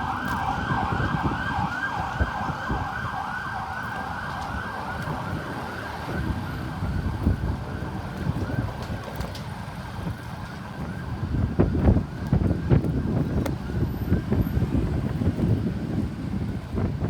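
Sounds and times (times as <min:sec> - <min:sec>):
siren yelping: 0:00.0 - 0:09.2
road traffic rumble: 0:00.0 - 0:17.0
wind buffeting microphone: 0:00.0 - 0:17.0.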